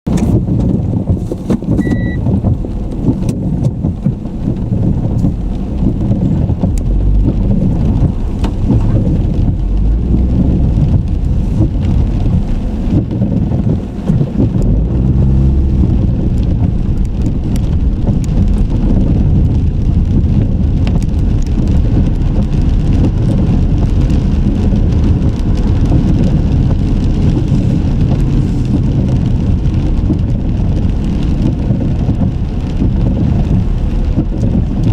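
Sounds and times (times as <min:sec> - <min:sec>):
road and engine noise: 0:00.0 - 0:34.9
short electronic beep: 0:01.8 - 0:02.2.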